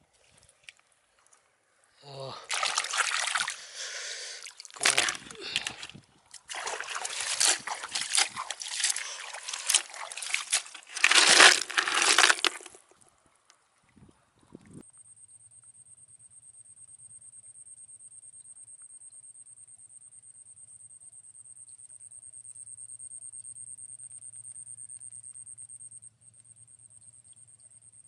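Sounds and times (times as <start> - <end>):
shallow water sloshing and splashing: 2.5 - 13.0.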